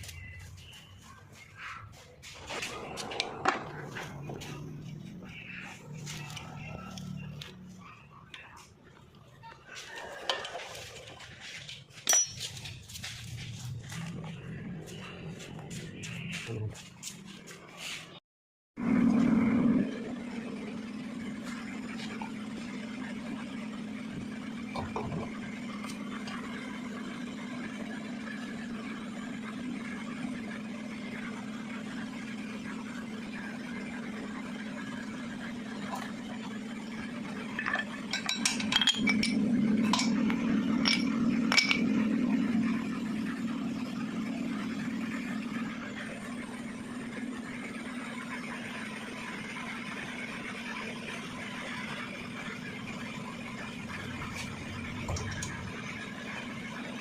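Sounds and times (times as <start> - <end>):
steady low hum: 0.0 - 9.8, 10.9 - 18.2, 18.8 - 57.0
metal tools clinking: 12.0 - 12.8, 37.6 - 40.2, 40.8 - 41.9.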